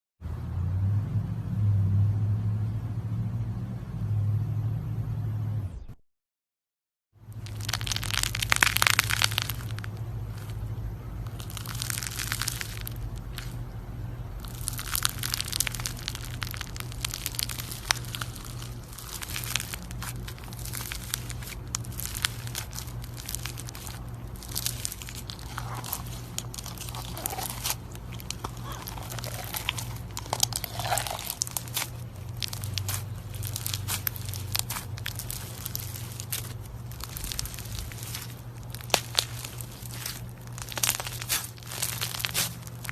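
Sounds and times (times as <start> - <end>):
crackling and popping clicks: 7.4 - 10.6, 14.4 - 42.9
slime squeezed by hand: 7.4 - 13.6, 14.4 - 42.9.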